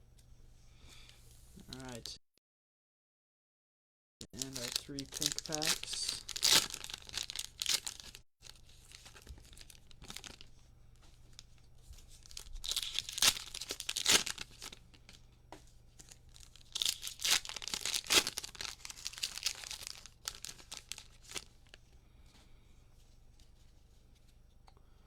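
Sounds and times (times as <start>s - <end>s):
wrappers crinkling: 4.3s - 10.5s, 11.2s - 15.2s, 16.0s - 21.8s
card packs tearing: 4.4s - 10.4s, 12.2s - 14.8s, 16.0s - 21.5s.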